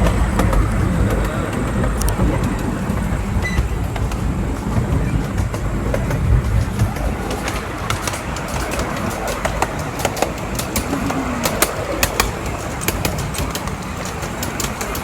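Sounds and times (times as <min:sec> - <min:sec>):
train cars rumbling on track: 0:00.0 - 0:15.0.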